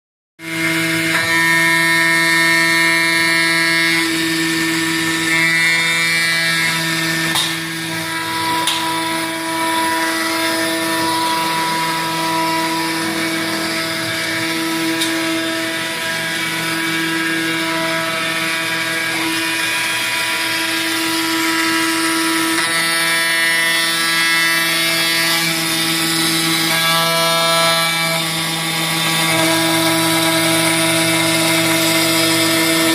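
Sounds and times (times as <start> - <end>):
machine spindle whine: 0.4 - 32.9.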